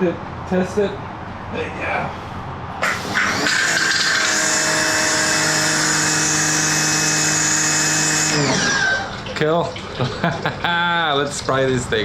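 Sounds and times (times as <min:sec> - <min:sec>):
pressure washer motor whining: 0:02.8 - 0:09.3.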